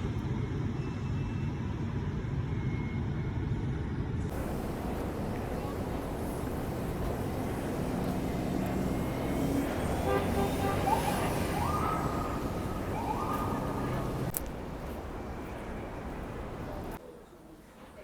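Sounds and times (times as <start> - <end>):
traffic rumble: 4.3 - 18.0.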